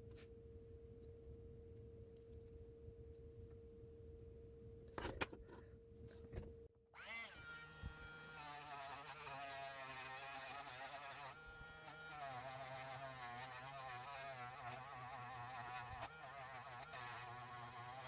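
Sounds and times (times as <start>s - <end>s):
rotary tool buzzing on metal: 7.0s - 18.0s.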